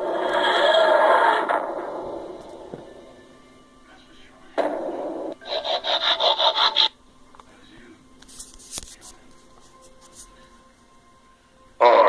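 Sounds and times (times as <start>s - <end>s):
rasping scrape strokes: 5.4s - 6.9s.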